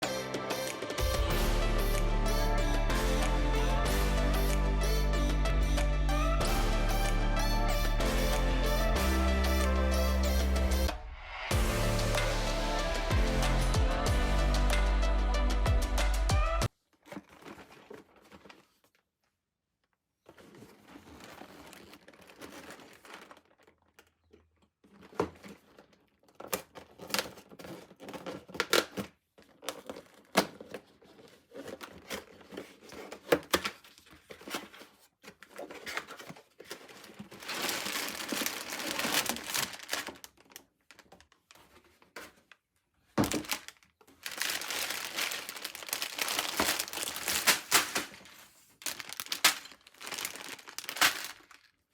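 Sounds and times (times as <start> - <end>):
plastic packaging crinkling: 16.9 - 19.0, 20.3 - 51.9.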